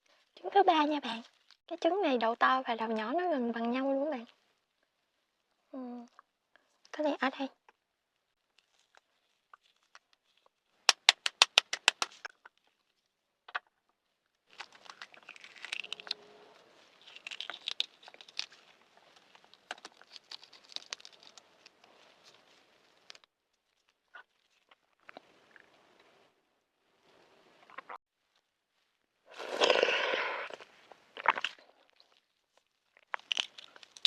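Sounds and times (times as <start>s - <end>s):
egg shell crackling as peeled: 14.5s - 23.3s, 31.2s - 34.0s.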